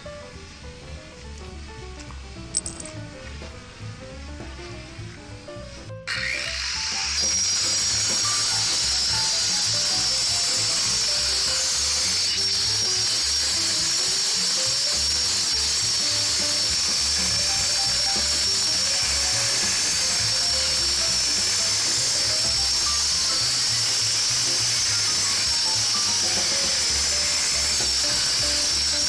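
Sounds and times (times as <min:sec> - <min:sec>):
power cutter whining through concrete: 0:06.1 - 0:29.0.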